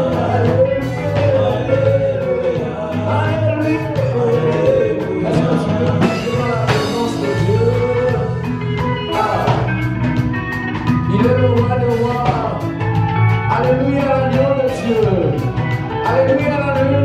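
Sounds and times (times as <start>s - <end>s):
people singing: 0.0s - 9.9s
drums: 0.0s - 17.0s
guitar: 0.0s - 17.0s.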